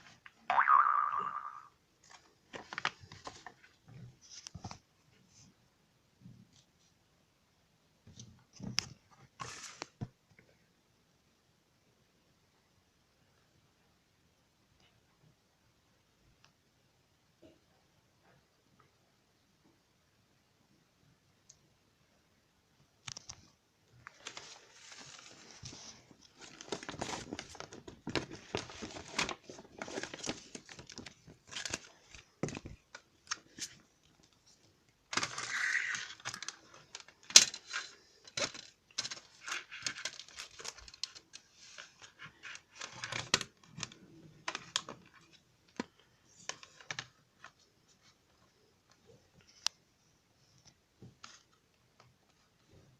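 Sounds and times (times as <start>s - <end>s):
packaging crinkling and rustling: 2.0s - 4.6s, 24.0s - 45.8s.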